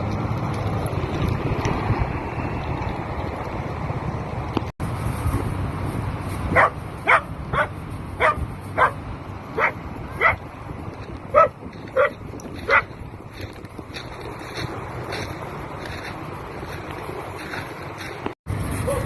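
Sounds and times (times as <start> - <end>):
dog barking: 6.5 - 9.0, 9.6 - 10.4, 11.3 - 12.9.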